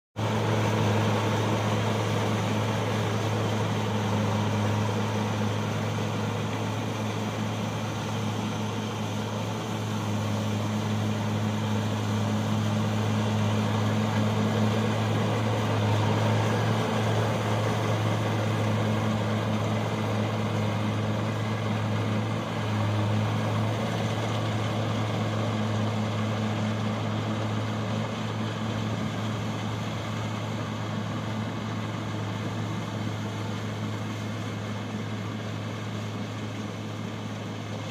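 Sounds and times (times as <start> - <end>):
combine harvester running: 0.2 - 37.9.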